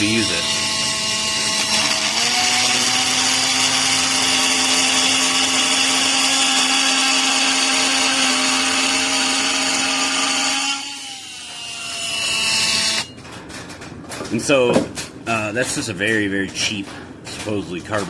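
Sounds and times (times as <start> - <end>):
blade rasping through wood: 0.0 - 13.1
oscillating multi-tool motor hum: 0.0 - 13.1.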